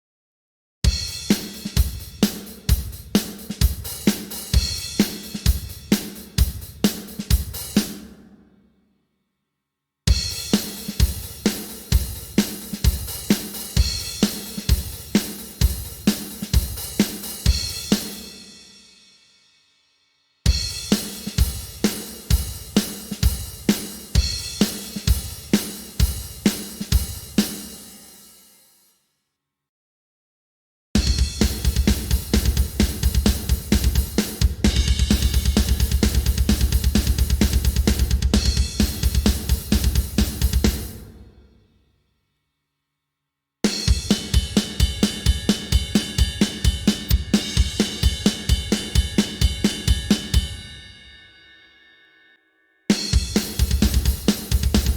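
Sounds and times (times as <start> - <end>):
snare drum: 0.9 - 8.4, 10.1 - 18.3, 20.5 - 27.9, 31.0 - 41.2, 43.7 - 50.7, 52.9 - 54.9
kick drum: 31.0 - 41.0, 43.9 - 50.6, 53.2 - 54.9
cymbals: 31.0 - 41.3, 43.7 - 54.9.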